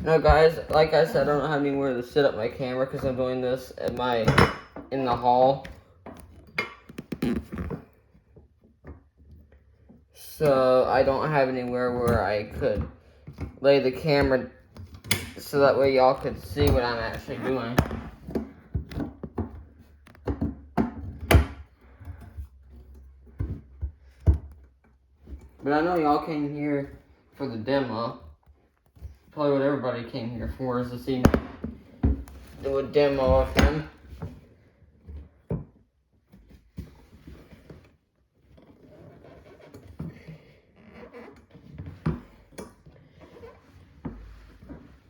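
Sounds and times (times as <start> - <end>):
rustling and scraping: 30.4 - 45.0.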